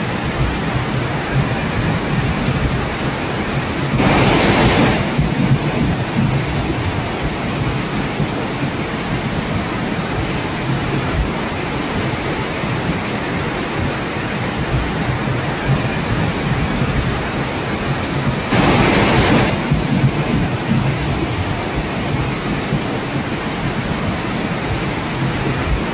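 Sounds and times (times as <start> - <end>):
rushing water: 0.0 - 25.9
water surge: 3.9 - 6.7, 18.5 - 21.8.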